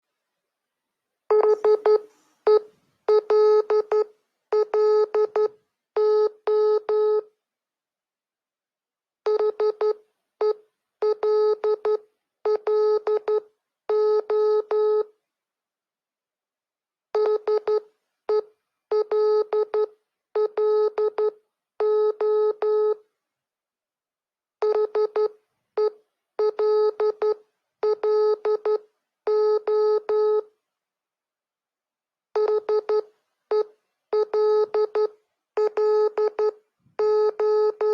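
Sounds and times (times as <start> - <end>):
morse code beeps: 1.3 - 7.2, 33.6 - 37.9.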